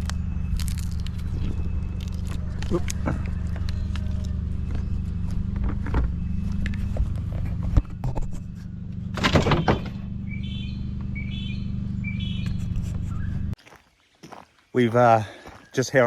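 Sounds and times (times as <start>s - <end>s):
engine idling: 0.0s - 13.6s
bird chirping: 9.7s - 16.0s.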